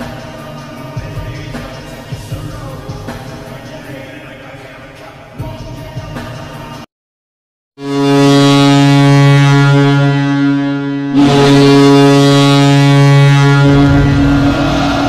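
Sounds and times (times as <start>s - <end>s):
air horn blast: 7.8s - 15.0s.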